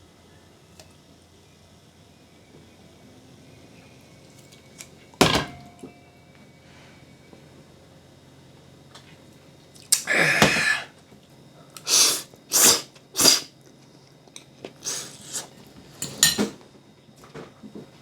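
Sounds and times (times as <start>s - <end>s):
person slurping spaghetti: 11.8s - 13.5s, 14.8s - 15.5s.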